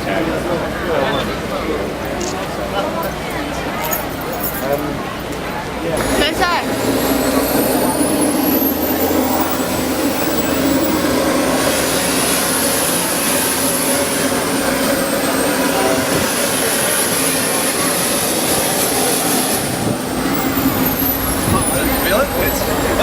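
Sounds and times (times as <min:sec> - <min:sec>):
high-pitched turbine whine: 0:06.0 - 0:23.0
jet turbine engine roaring: 0:06.0 - 0:23.0.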